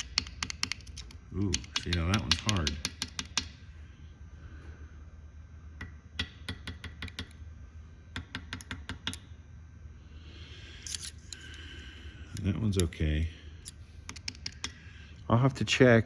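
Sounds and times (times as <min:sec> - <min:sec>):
tool clicking against metal: 0:00.0 - 0:03.5.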